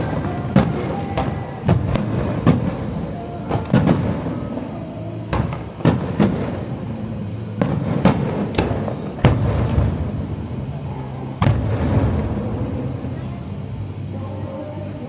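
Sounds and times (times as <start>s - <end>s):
fireworks bangs: 0.0s - 15.0s
low rumble of echoing reports: 0.0s - 15.0s.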